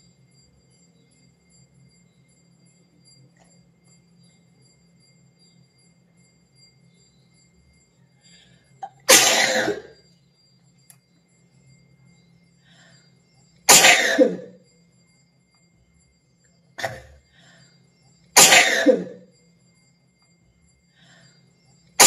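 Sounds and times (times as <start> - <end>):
woman sneezing loudly: 9.1 - 9.9, 13.7 - 14.5, 18.4 - 19.2.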